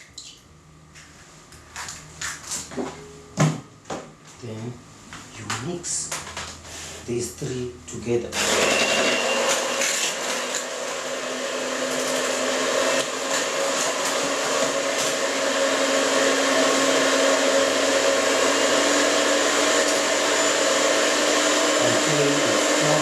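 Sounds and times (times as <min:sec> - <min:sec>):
electric mixer running: 0:08.3 - 0:23.0.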